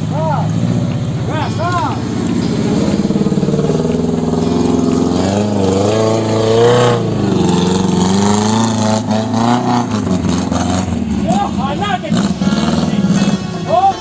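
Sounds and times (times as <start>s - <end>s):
off-road vehicle engine revving: 0.0s - 14.0s.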